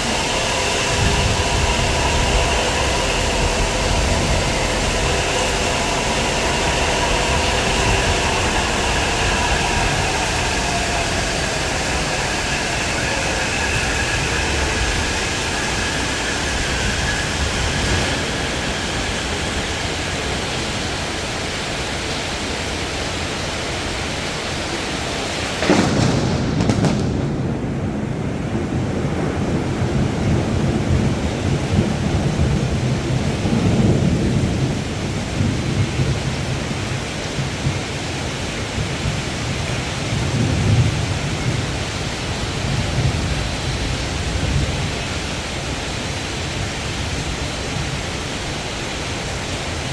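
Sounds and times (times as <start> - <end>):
thunderclap rumbling: 0.0 - 21.2, 25.2 - 45.4
train electric motor whine: 0.0 - 23.1
heavy rain: 0.0 - 49.9.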